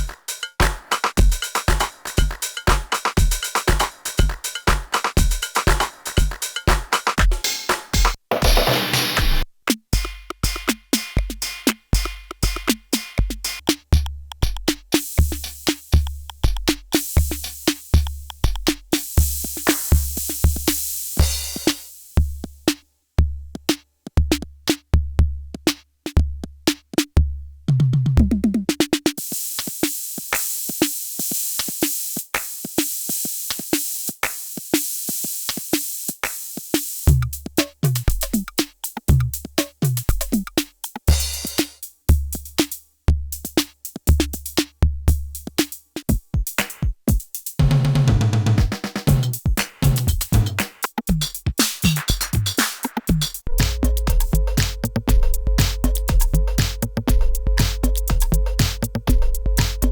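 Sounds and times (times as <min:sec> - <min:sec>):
pitched drum fill: 0:00.0 - 0:09.4, 0:14.6 - 0:22.7, 0:28.0 - 0:42.7, 0:46.1 - 0:59.9
drum machine kicks: 0:00.0 - 0:29.7, 0:37.1 - 0:59.9
drum machine hi-hats: 0:00.0 - 0:59.9.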